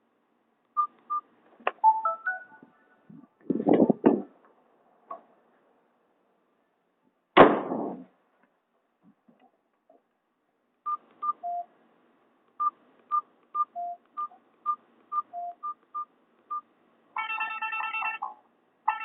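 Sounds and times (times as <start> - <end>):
phone keypad beeps: 1.8 - 2.7, 10.9 - 11.7, 12.6 - 16.6, 17.2 - 18.3
phone ringtone tune: 1.8 - 2.8, 17.2 - 19.0.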